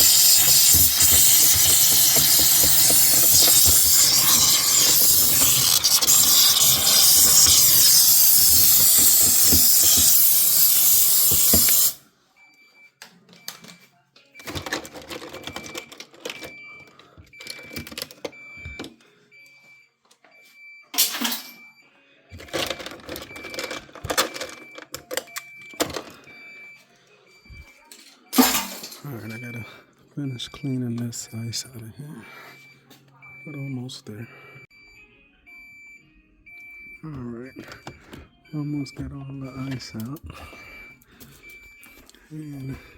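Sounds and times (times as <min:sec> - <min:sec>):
steamer hissing: 0:00.0 - 0:12.0
short electronic beeps: 0:00.0 - 0:13.5, 0:24.3 - 0:42.9.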